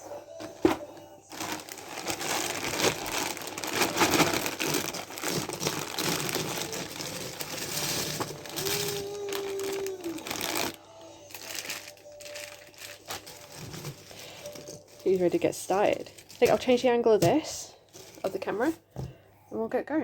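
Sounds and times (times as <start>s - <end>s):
plastic puzzle pieces rustling: 1.3s - 16.8s.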